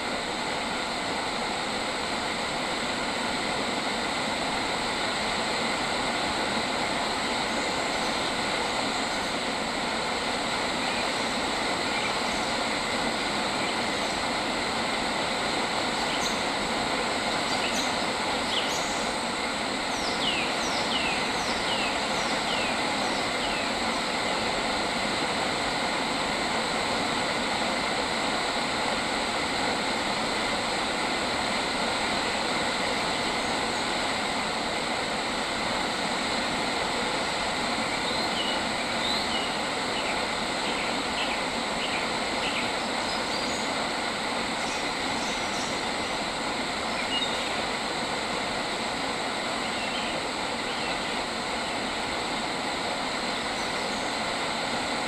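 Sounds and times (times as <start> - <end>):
steady rushing outdoor noise: 0.0 - 55.0.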